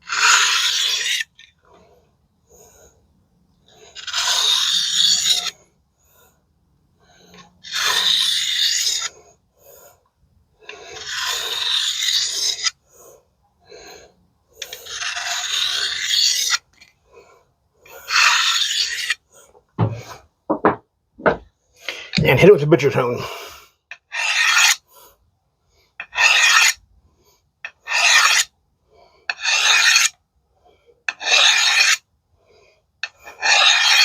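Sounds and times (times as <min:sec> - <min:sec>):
blade scraping on sharpener: 0:00.0 - 0:01.7, 0:03.7 - 0:05.6, 0:07.3 - 0:09.2, 0:10.6 - 0:12.8, 0:14.6 - 0:16.9, 0:17.9 - 0:19.2, 0:23.9 - 0:24.8, 0:26.0 - 0:26.8, 0:27.6 - 0:28.5, 0:29.3 - 0:30.2, 0:31.1 - 0:32.0, 0:33.0 - 0:34.0.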